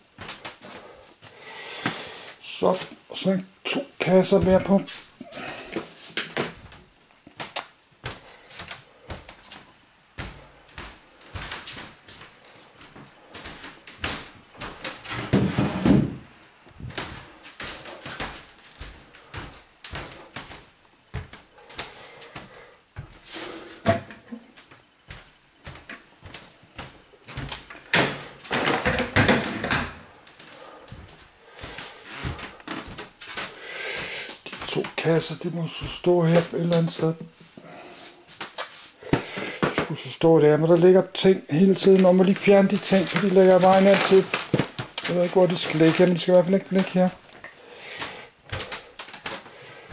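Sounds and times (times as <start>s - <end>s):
storage boxes knocking and bumping: 15.1s - 16.9s, 27.9s - 30.0s.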